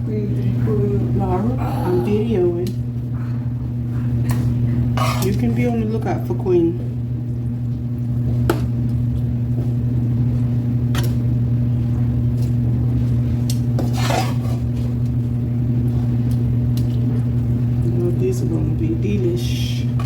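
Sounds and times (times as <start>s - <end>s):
steady low hum: 0.0s - 20.0s
utensil scraping a pan: 5.0s - 5.5s, 13.8s - 15.0s.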